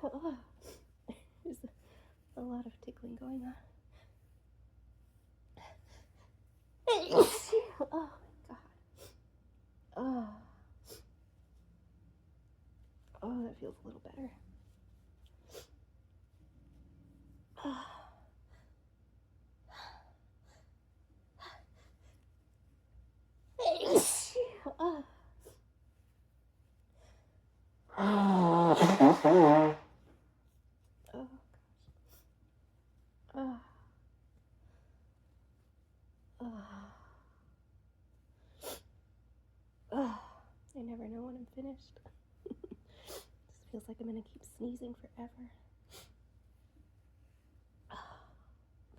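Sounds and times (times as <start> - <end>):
sharp burst of breath: 23.6 - 24.6, 28.0 - 29.8
woman sighing: 28.0 - 29.8.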